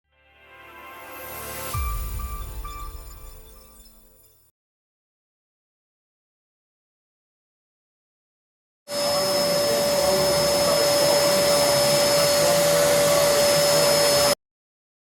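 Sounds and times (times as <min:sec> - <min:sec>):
vacuum cleaner running: 0:08.9 - 0:14.4.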